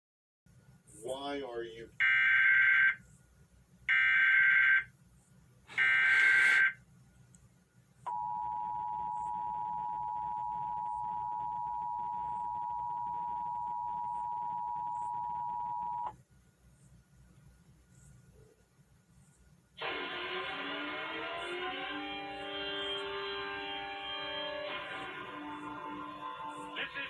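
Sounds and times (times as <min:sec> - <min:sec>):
harsh digital data screech: 0:05.7 - 0:06.8
two-tone attention signal: 0:05.8 - 0:06.8.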